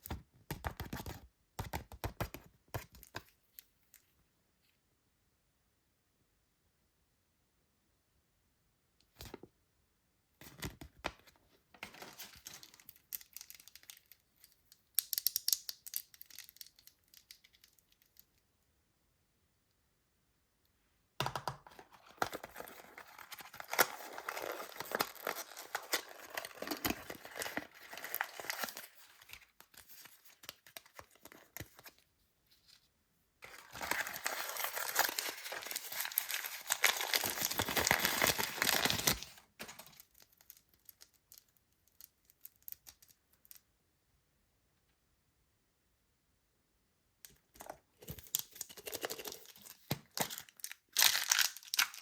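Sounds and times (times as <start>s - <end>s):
packaging crinkling and tearing: 11.8s - 14.6s, 21.8s - 32.0s, 33.4s - 43.2s, 47.6s - 52.0s.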